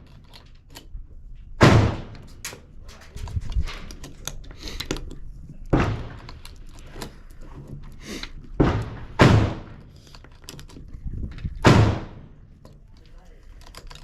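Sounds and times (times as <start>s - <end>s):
gunshots with echo: 1.6s - 2.3s, 5.7s - 6.3s, 8.6s - 9.8s, 11.6s - 12.4s.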